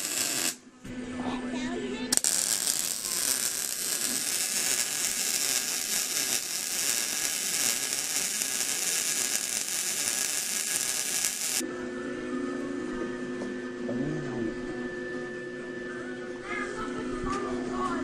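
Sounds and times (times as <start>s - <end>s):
welder crackling: 0.0s - 0.6s, 2.1s - 11.6s.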